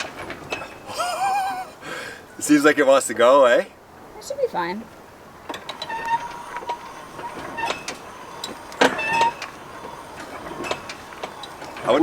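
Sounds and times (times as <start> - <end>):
high metallic squealing: 5.5 - 12.0.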